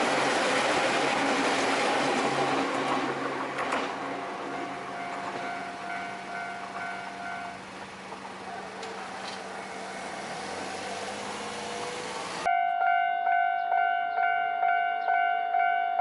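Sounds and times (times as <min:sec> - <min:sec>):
train wheels rumbling on rails: 0:00.0 - 0:12.5
faint crossing warning bell: 0:04.1 - 0:11.6, 0:12.4 - 0:16.0.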